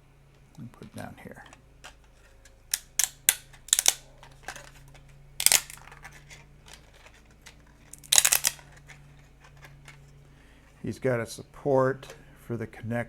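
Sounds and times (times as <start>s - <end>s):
faint low hum: 0.0s - 13.0s
plastic parts clicking on table: 1.4s - 10.1s.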